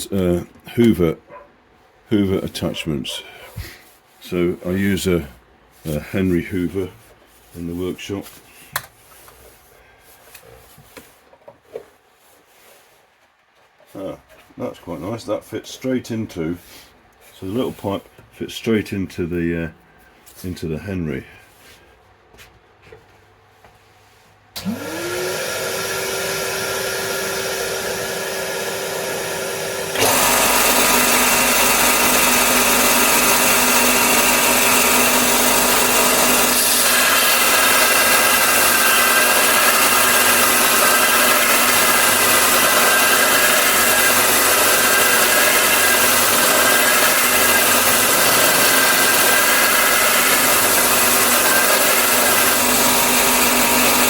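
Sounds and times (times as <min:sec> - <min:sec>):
belt sander whining: 0:24.6 - 0:54.0
vacuum cleaner running: 0:24.6 - 0:54.0.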